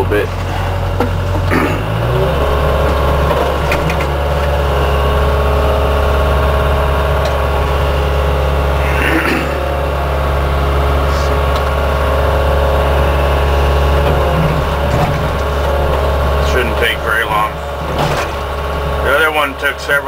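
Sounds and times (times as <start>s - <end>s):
excavator engine revving: 0.0s - 20.0s.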